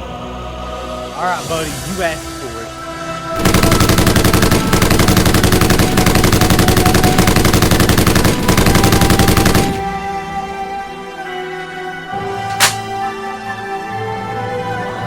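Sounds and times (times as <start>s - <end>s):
background music: 0.0s - 15.0s
automatic gunfire: 3.4s - 10.0s, 12.4s - 13.0s.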